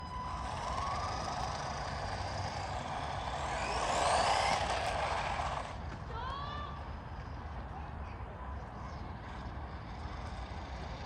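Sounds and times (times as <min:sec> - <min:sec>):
electric motor whining: 0:00.0 - 0:05.8.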